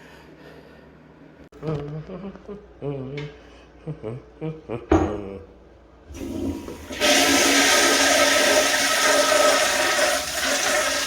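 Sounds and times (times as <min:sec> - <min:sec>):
toilet flushing: 0:06.1 - 0:11.0.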